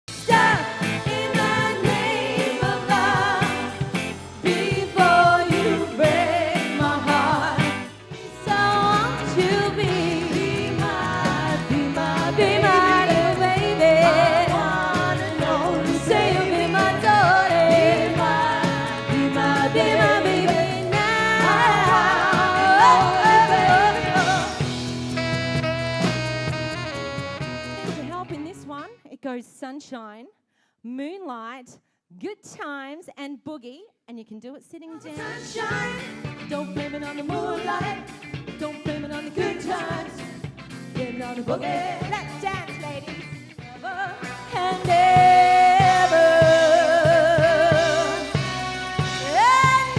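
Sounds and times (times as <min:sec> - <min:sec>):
upbeat music with women singing: 0:00.1 - 0:25.3, 0:35.0 - 0:49.9.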